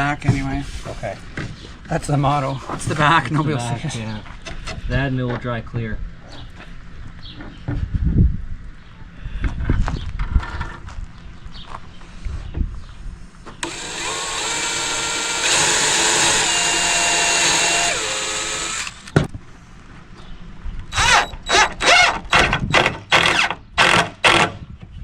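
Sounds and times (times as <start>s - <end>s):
cordless drill driving a screw: 13.6s - 19.2s, 20.9s - 24.5s
drill click: 13.6s - 19.2s, 20.9s - 24.5s
short drill trigger bursts: 13.6s - 19.2s, 20.9s - 24.5s.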